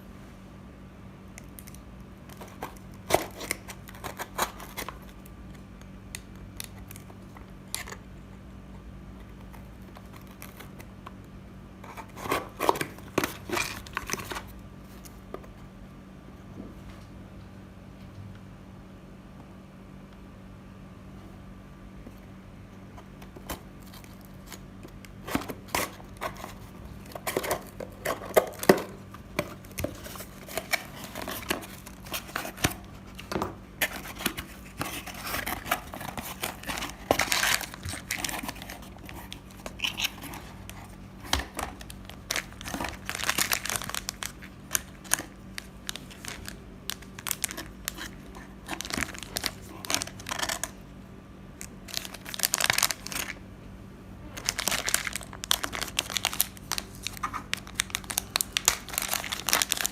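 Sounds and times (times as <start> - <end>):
faint steady hum: 0.0 - 59.9
crinkling and tearing: 1.4 - 8.1, 9.2 - 11.2, 11.8 - 15.2, 23.1 - 50.8, 51.6 - 53.4, 54.4 - 59.9.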